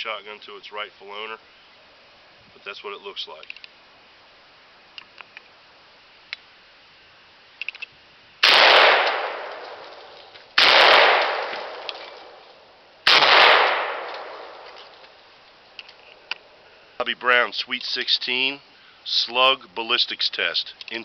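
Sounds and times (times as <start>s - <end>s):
shotgun shots with echo: 8.4s - 10.0s, 10.6s - 12.2s, 13.1s - 14.7s.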